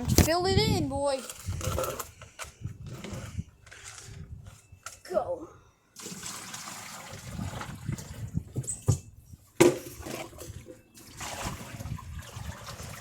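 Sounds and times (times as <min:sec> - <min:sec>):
water trickling in dishwasher: 0:06.0 - 0:13.0.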